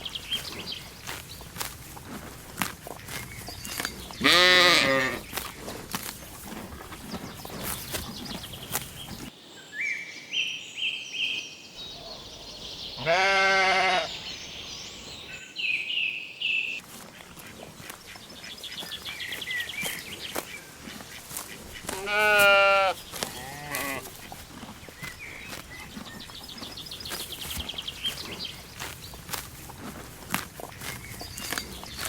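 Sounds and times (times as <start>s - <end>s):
sheep bleating: 4.2s - 5.2s, 13.0s - 14.1s, 21.9s - 24.1s.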